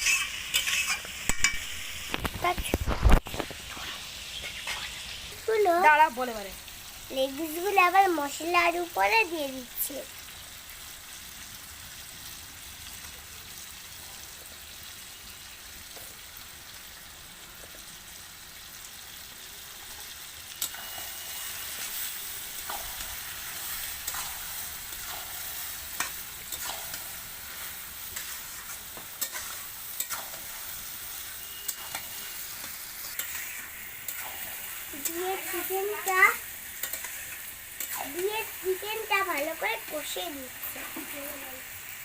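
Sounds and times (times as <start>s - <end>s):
spatula stirring and scraping: 0.0s - 1.7s, 21.4s - 36.2s
chicken sizzling in oil: 0.0s - 42.0s.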